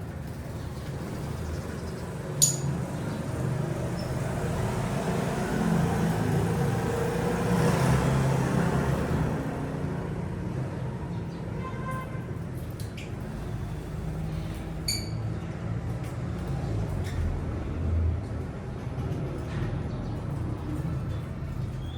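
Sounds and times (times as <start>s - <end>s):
vehicle engine passing by: 2.8s - 11.2s.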